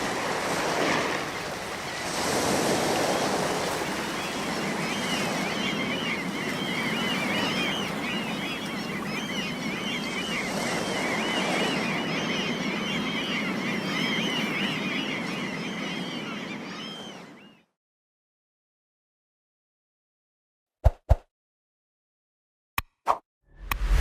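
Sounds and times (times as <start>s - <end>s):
sea waves washing: 0.0s - 11.8s
seagulls calling: 0.2s - 17.8s.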